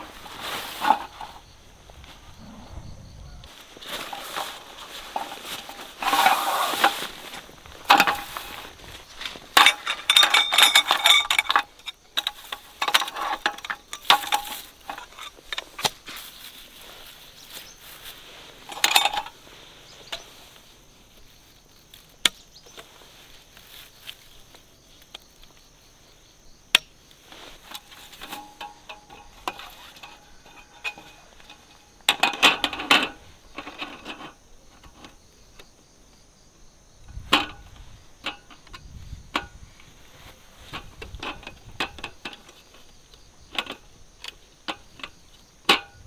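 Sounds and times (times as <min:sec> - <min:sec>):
metal utensils and dishes clattering: 0:07.9 - 0:16.0, 0:18.7 - 0:19.4, 0:27.8 - 0:35.2.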